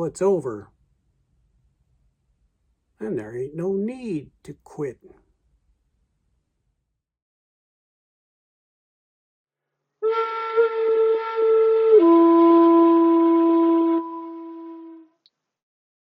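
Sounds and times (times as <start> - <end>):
wind instrument long notes: 10.0 - 15.1.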